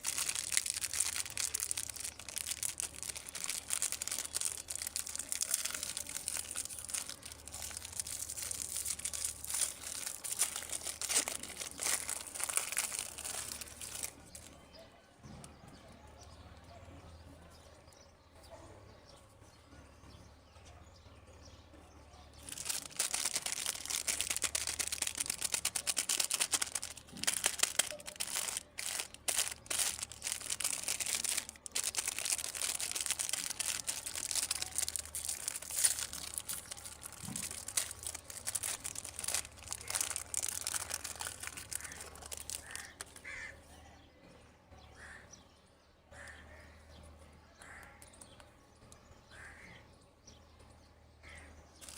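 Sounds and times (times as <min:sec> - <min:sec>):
plastic candy packaging crinkling: 0:00.0 - 0:14.6, 0:22.4 - 0:43.5.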